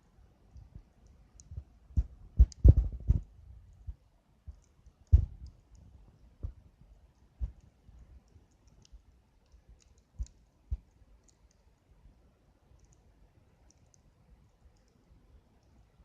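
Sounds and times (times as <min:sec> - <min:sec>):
campfire crackling: 0:07.4 - 0:11.6.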